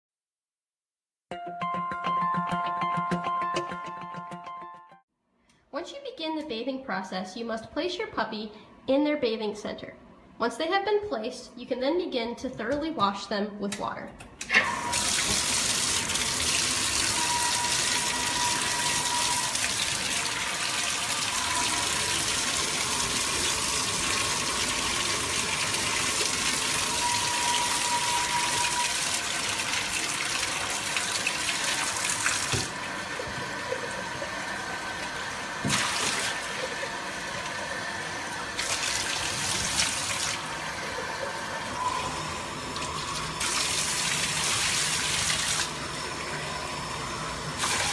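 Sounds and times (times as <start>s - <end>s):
running tap water hissing: 14.7s - 47.9s.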